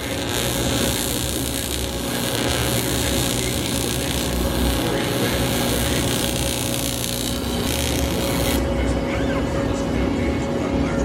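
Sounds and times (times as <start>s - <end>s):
welding arc buzzing: 0.0s - 8.7s.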